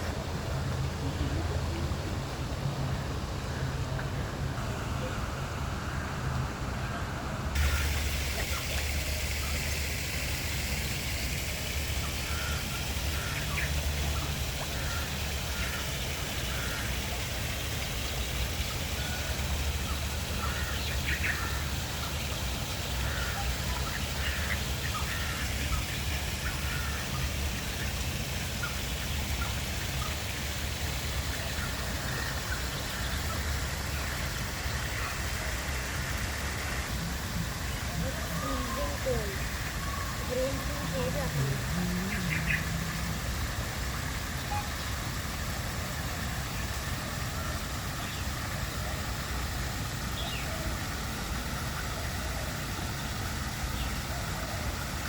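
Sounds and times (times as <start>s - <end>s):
steady low rumble: 7.5s - 55.0s
birds chirping and calling: 7.6s - 45.0s, 50.2s - 50.6s.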